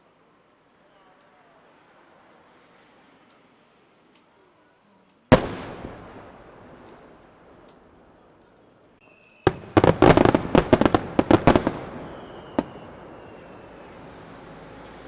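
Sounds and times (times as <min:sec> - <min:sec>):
firework shells bursting: 0:05.3 - 0:08.4, 0:09.5 - 0:13.9
rumbling echo: 0:09.6 - 0:13.2.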